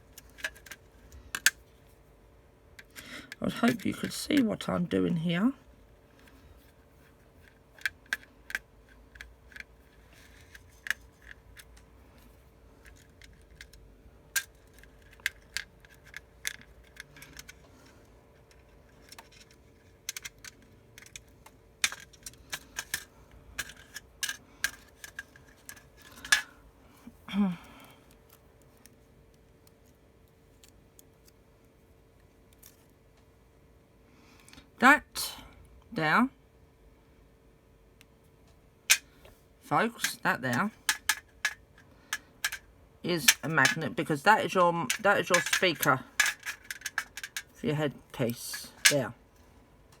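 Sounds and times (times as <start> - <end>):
faint steady hum: 0.0 - 50.0
screwdriver clicks and metallic ticks: 44.8 - 47.4.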